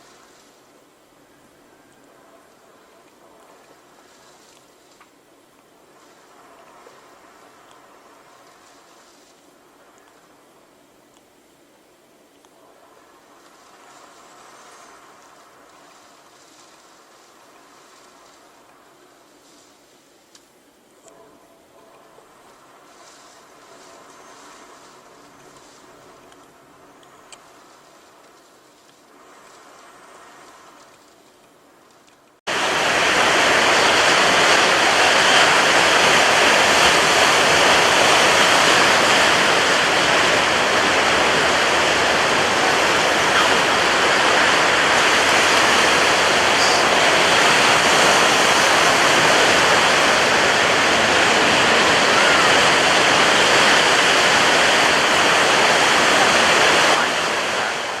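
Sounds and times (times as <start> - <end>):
water rushing: 32.5 - 58.0.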